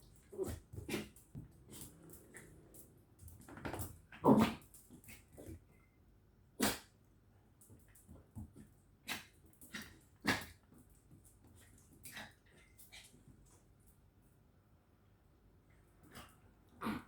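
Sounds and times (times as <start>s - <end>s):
dogs playing and scuffling: 0.0s - 5.7s, 7.6s - 14.1s.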